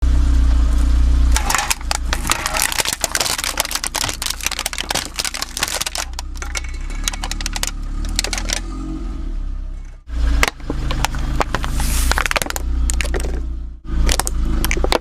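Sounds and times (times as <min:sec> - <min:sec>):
car engine hum: 0:00.0 - 0:15.0
objects cracking under car tyre: 0:01.3 - 0:08.8, 0:10.4 - 0:15.0.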